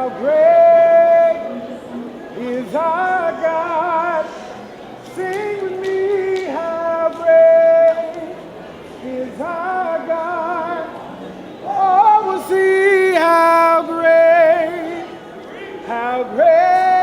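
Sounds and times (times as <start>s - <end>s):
voices singing long notes: 11.6s - 15.2s.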